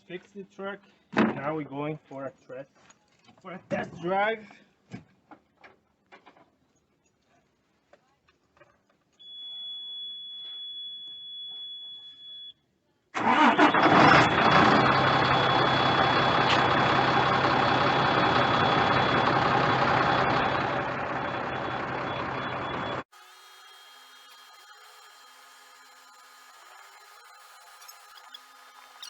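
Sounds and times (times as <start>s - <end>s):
truck engine starting and running: 13.2s - 23.1s.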